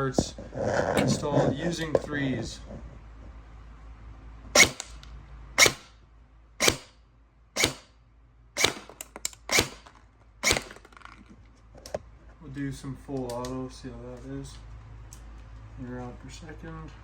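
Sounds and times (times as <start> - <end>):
airsoft rifle shots: 4.6 - 5.0, 5.6 - 6.0, 6.6 - 7.0, 7.6 - 8.0, 8.6 - 11.0.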